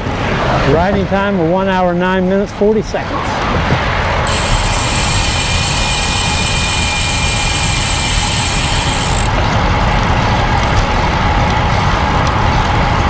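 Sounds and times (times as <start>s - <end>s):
wind buffeting microphone: 3.1s - 4.3s
bike tyre noise: 3.3s - 13.0s
thin high whine: 4.2s - 9.6s.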